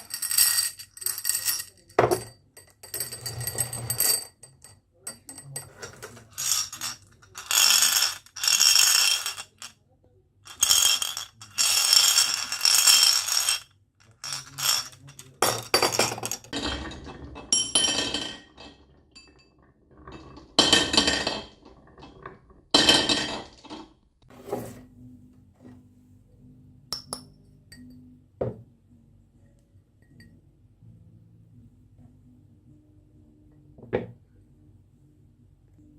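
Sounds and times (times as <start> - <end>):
marbles rolling and clinking: 0.0 - 4.2, 5.2 - 9.8, 10.5 - 23.9.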